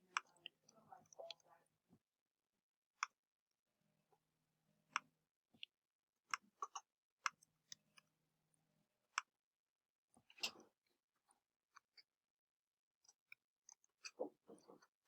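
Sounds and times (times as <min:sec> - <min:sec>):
keyboard and mouse clicks: 0:10.3 - 0:10.7.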